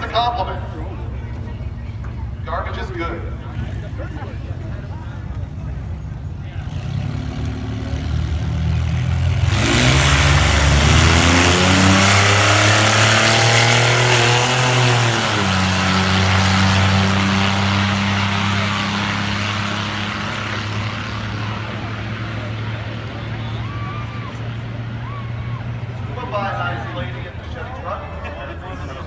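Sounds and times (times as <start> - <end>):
drag car engines at full throttle: 0.0 - 29.0.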